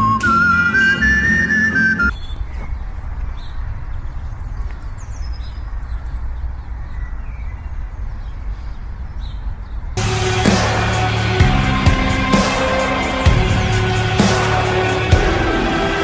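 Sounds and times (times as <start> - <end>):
faint bird chirps: 0.0 - 10.0.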